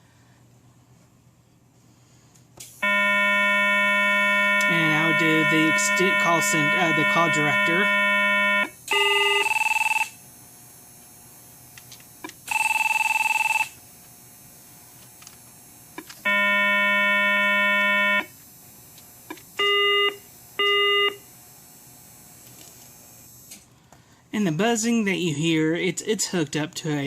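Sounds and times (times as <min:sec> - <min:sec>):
electronic signal tones: 0:02.8 - 0:10.2, 0:12.4 - 0:13.8, 0:16.2 - 0:18.3, 0:19.6 - 0:21.2
telephone buzzer: 0:02.8 - 0:23.4.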